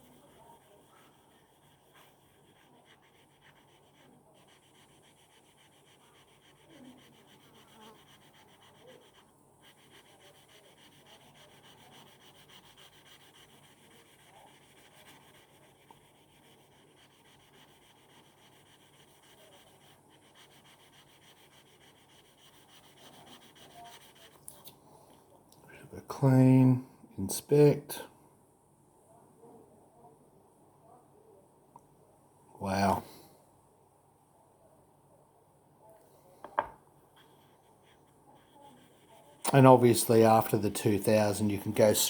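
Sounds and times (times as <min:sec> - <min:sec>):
blade rubbing on sandpaper: 0:00.0 - 0:24.4.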